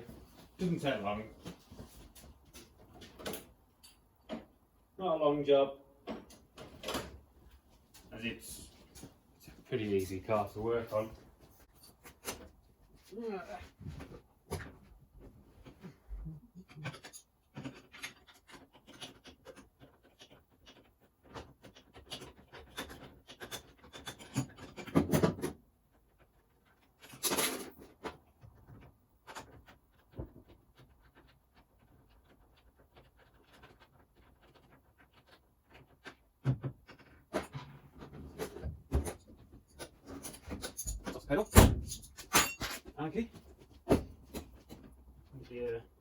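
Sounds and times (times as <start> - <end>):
tools clicking and scraping: 16.6 - 25.5, 30.8 - 43.5.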